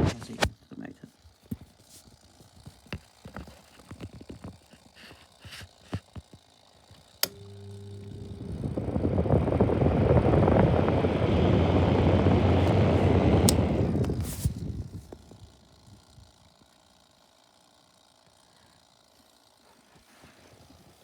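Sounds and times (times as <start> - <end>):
fan switch click: 7.2 - 8.5, 10.8 - 15.3
fan motor humming and air rushing: 7.2 - 16.6.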